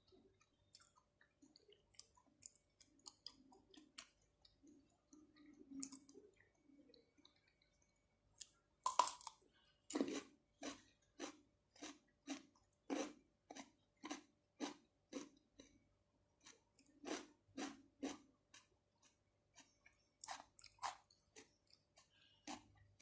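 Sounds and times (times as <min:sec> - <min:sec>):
wet chewing: 0:00.1 - 0:09.3, 0:16.4 - 0:23.0.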